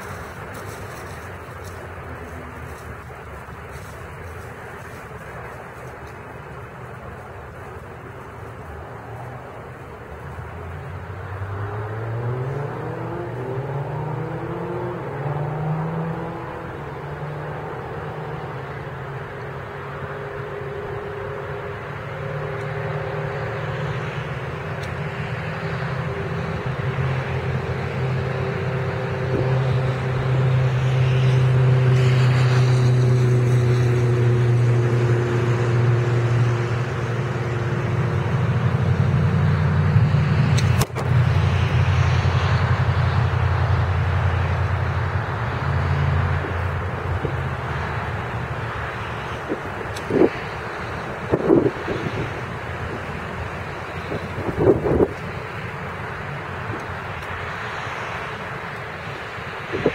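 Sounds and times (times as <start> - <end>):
engine drone: 0.0 - 59.9
sharp click: 40.5 - 41.2.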